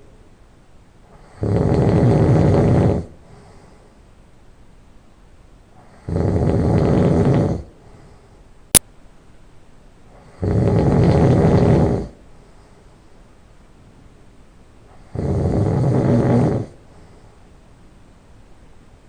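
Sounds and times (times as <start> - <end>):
quiet breathing: 1.0 - 4.2, 5.7 - 8.7, 10.1 - 13.4, 14.8 - 17.7
person snoring through nose: 1.1 - 3.2, 5.8 - 7.7, 10.2 - 12.2, 14.9 - 16.8.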